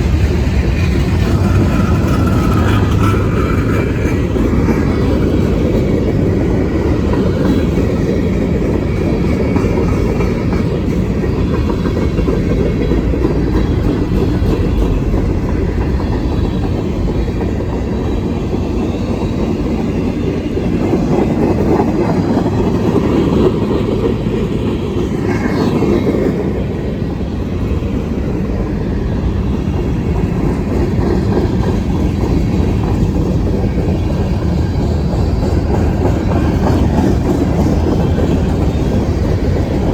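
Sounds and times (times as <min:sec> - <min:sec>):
train wheels rumbling on rail: 0:00.0 - 0:39.9.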